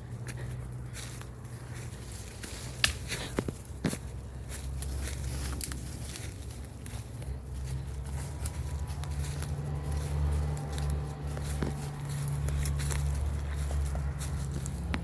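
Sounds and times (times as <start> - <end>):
footsteps on a trail: 0.0 - 15.0
low rumble: 0.0 - 15.0.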